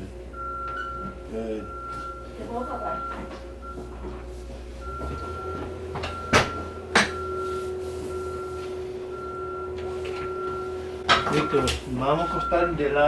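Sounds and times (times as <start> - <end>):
sharp knocks: 6.0 - 7.2.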